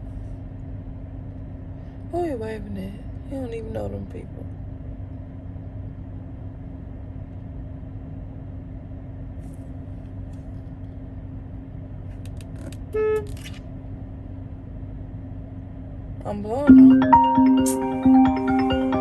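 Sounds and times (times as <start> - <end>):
car horn beep: 12.9 - 13.4.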